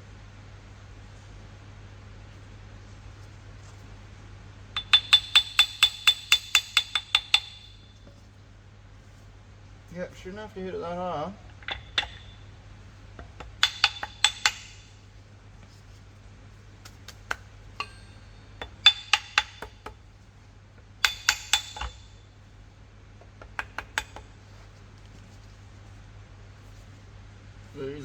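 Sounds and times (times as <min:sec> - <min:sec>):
tapping metal part ringing clinks: 0:04.8 - 0:08.0, 0:17.8 - 0:19.9, 0:21.0 - 0:22.2.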